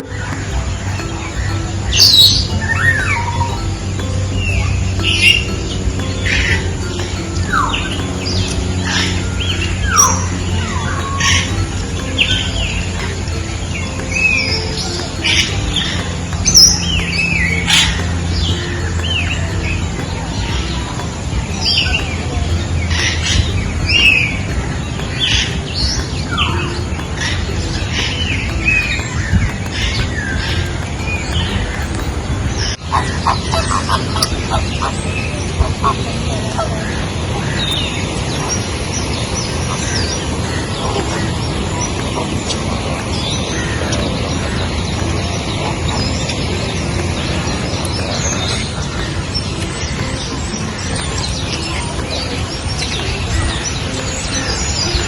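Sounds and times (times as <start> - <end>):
birds chirping and whistling: 0.0 - 19.8
birds chirping: 0.0 - 55.0
steady background noise: 0.0 - 55.0.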